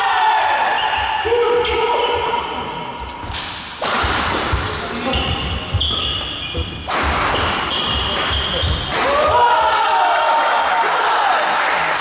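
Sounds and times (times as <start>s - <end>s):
racket hitting shuttlecock: 3.2s - 9.4s
shoes squeaking on floor: 4.5s - 8.9s.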